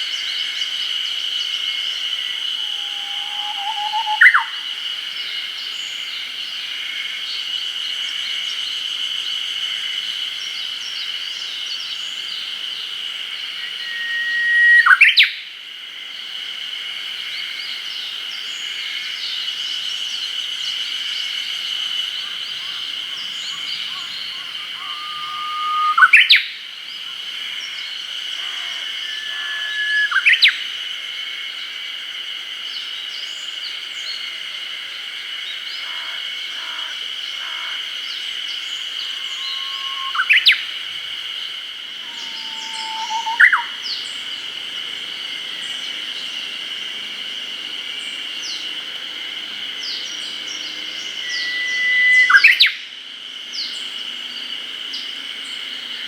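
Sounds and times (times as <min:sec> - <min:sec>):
high-pitched insect drone: 0:00.0 - 0:56.0
bird singing whistled song: 0:02.8 - 0:04.6, 0:13.6 - 0:15.4, 0:23.5 - 0:26.5, 0:29.0 - 0:30.6, 0:39.2 - 0:40.6, 0:42.1 - 0:43.8, 0:51.0 - 0:52.9.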